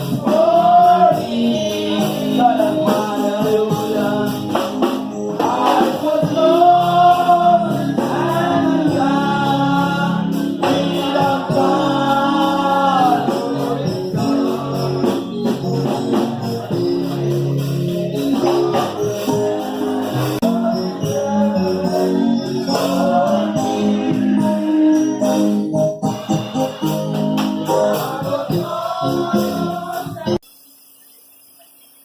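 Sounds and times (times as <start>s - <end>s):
gospel singing: 0.0s - 30.5s.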